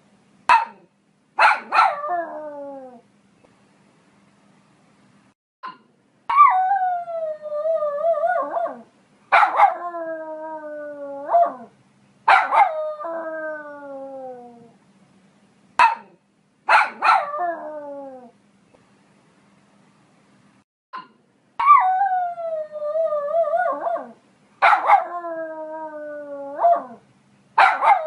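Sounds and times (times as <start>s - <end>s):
dog howling: 21.6s - 27.0s.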